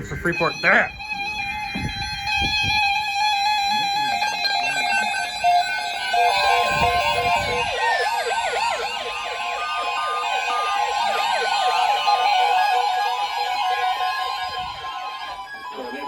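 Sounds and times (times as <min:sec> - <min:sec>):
steady attention tone: 0:00.0 - 0:16.0
music with rising and falling glides: 0:05.4 - 0:16.0.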